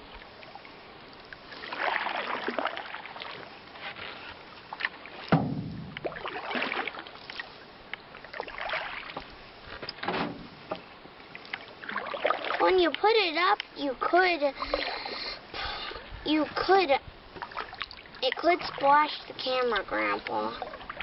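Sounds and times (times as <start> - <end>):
paddle splashing through water: 1.5 - 9.4, 10.0 - 13.0, 17.3 - 21.0
sharp knock: 5.3 - 6.1.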